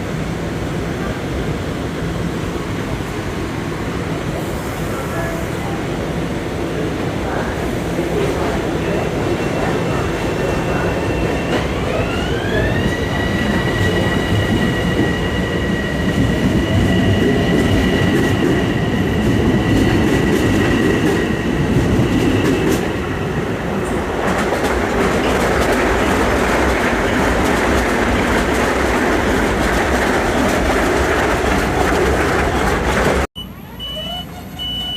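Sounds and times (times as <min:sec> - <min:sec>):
train rumble: 0:00.0 - 0:33.3
clattering rail noise: 0:06.8 - 0:33.3.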